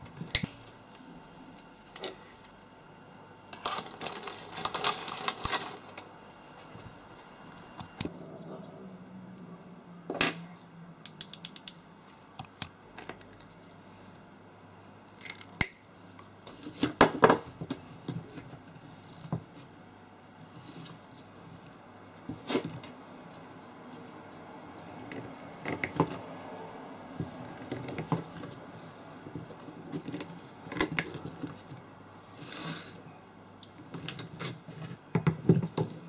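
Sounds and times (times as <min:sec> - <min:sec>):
ratchet clicking: 0:11.1 - 0:11.8.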